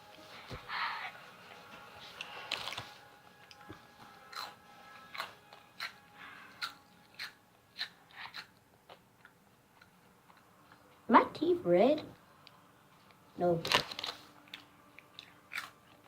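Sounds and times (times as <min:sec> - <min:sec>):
crisp snack crunching: 0:13.6 - 0:14.6.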